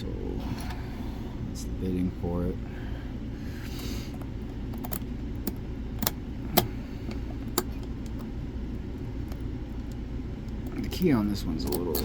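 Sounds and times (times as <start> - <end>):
steady low hum: 0.0 - 12.0
padlock and key clicking: 4.7 - 6.7.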